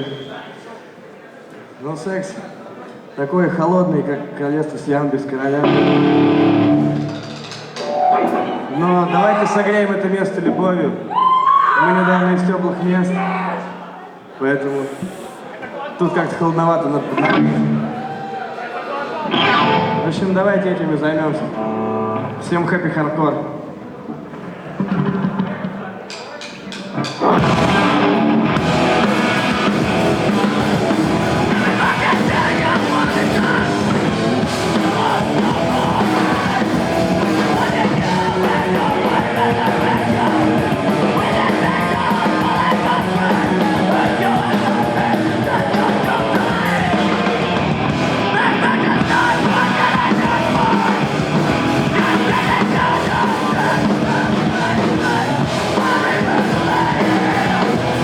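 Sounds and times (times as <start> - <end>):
live rock band playing: 5.6 - 8.8, 17.2 - 18.2, 19.3 - 20.4, 24.8 - 58.0.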